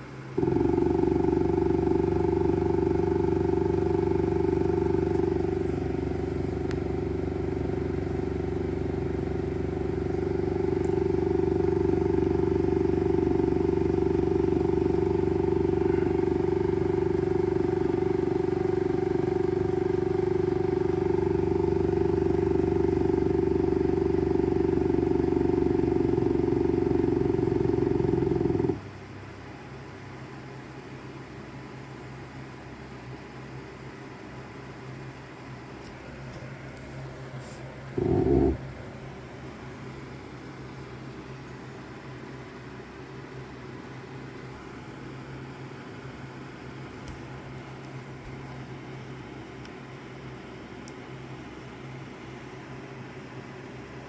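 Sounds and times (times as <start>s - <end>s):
stepper motor whine: 0.0s - 28.9s, 36.7s - 49.1s.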